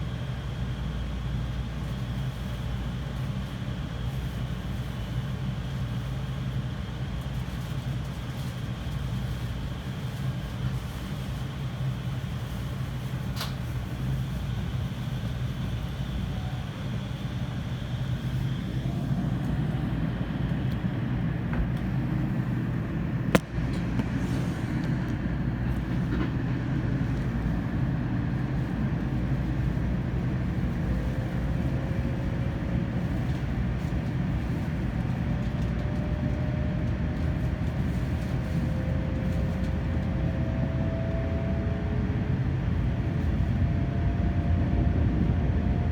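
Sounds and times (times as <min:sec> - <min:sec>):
train cabin low rumble: 0:00.0 - 0:45.9
faint whine rising in pitch: 0:18.2 - 0:28.3.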